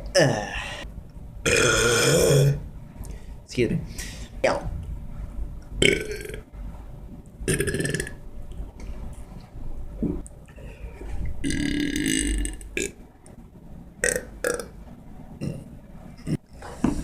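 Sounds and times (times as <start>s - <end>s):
man belching: 1.5s - 2.6s, 5.8s - 6.4s, 7.5s - 8.2s, 11.4s - 13.0s.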